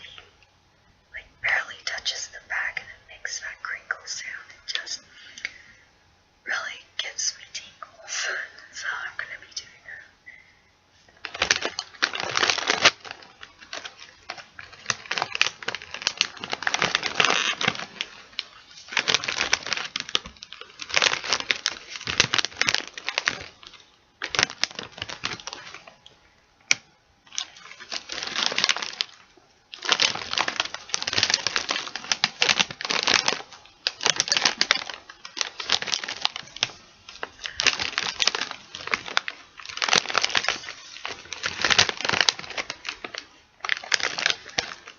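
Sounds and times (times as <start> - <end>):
chip bag crackling: 11.1 - 44.9.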